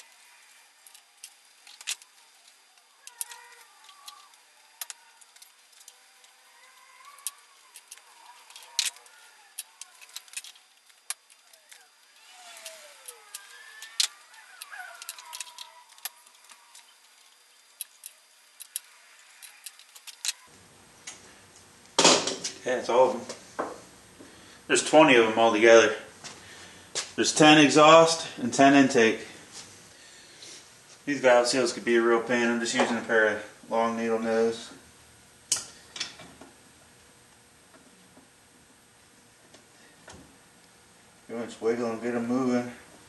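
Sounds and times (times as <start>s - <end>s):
metallic clicks of parts and tools: 0.8s - 11.8s, 12.6s - 20.4s, 35.5s - 36.4s.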